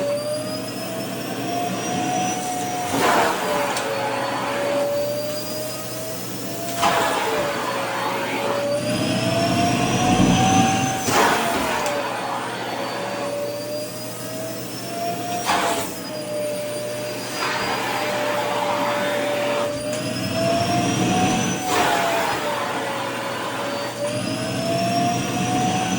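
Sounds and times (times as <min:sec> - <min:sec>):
vacuum cleaner motor whine: 0:00.0 - 0:25.9.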